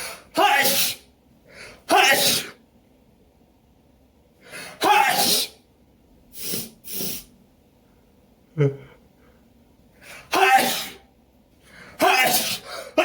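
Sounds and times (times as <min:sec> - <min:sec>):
person sneezing: 0:00.0 - 0:01.1, 0:01.9 - 0:02.6, 0:04.6 - 0:05.6, 0:10.1 - 0:11.1, 0:12.0 - 0:13.0.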